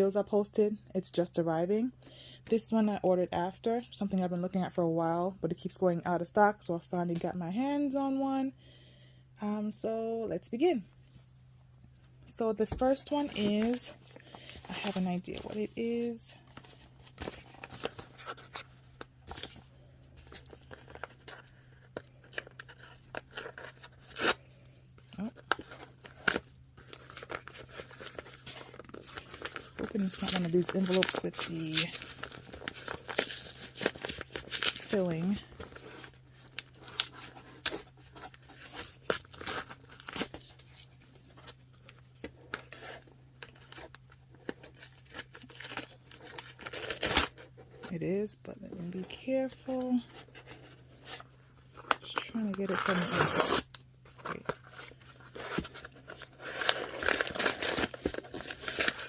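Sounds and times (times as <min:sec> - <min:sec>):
faint electrical hum: 0:00.0 - 0:59.0
packaging rustling and tearing: 0:16.5 - 0:47.9, 0:49.1 - 0:59.0
paper envelope being torn open: 0:16.6 - 0:41.1, 0:44.5 - 0:47.4, 0:51.8 - 0:59.0.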